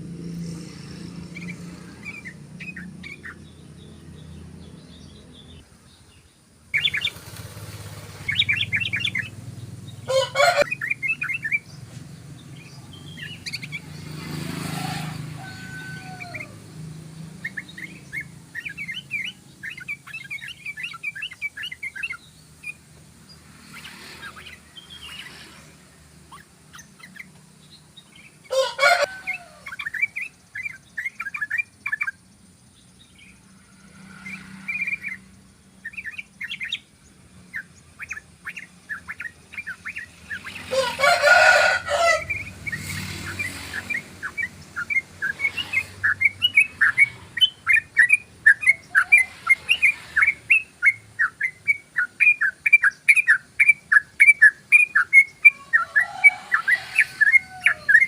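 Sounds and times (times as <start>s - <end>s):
bird chirping rapidly: 0.0s - 58.0s
harsh bird call: 6.8s - 11.7s, 12.6s - 16.6s, 28.1s - 32.2s, 37.6s - 58.0s.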